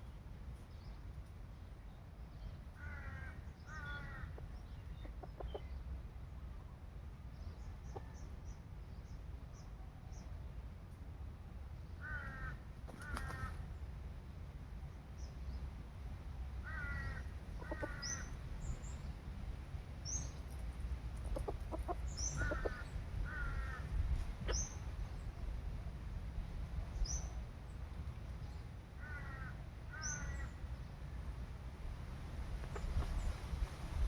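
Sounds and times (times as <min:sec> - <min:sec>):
small birds chirping: 0:01.9 - 0:05.9, 0:17.0 - 0:19.2, 0:20.0 - 0:25.5, 0:32.6 - 0:33.8
bird calls in pairs: 0:16.7 - 0:19.0, 0:21.3 - 0:24.9, 0:29.0 - 0:30.6.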